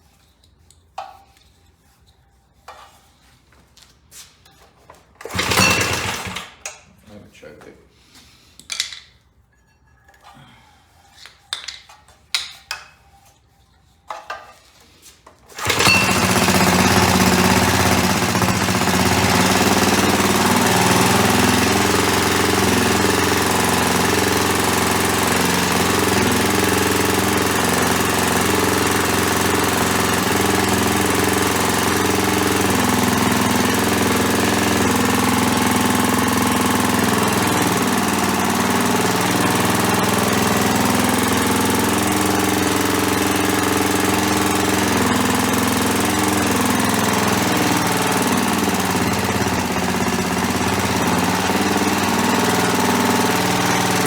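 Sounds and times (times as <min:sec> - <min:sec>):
small engine running: 0:05.2 - 0:06.6, 0:15.6 - 0:54.0.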